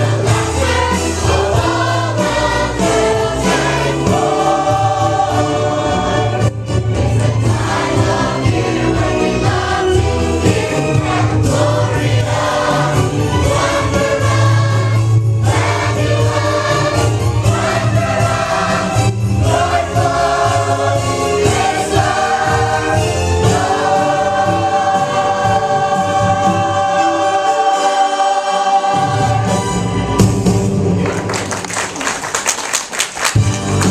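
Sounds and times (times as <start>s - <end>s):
choir singing: 0.0s - 30.1s
instrumental accompaniment: 0.0s - 32.4s.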